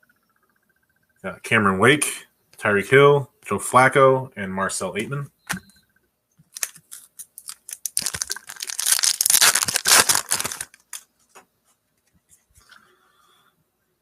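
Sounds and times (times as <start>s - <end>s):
foil pack tearing and crinkling: 6.5s - 11.1s.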